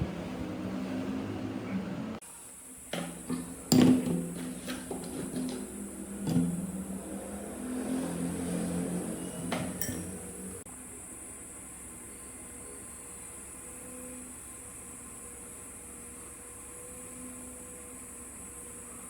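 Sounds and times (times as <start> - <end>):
metallic clinks and knocks: 9.4 - 10.2.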